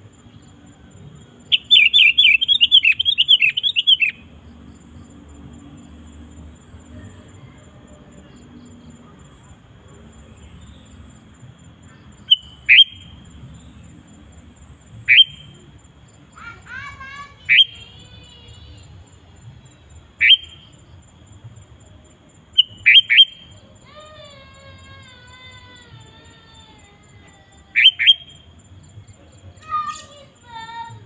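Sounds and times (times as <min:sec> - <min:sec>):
bird whistled calls: 0:01.5 - 0:04.2, 0:12.2 - 0:13.1, 0:15.1 - 0:15.5, 0:20.2 - 0:20.6, 0:22.6 - 0:23.4, 0:27.8 - 0:28.4
bird warbling: 0:15.1 - 0:15.4, 0:20.2 - 0:20.6.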